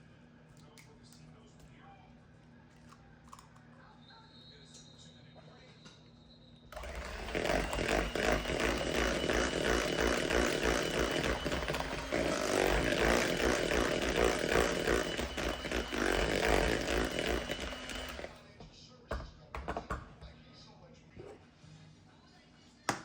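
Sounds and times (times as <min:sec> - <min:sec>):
small motor buzzing: 0:06.8 - 0:18.4.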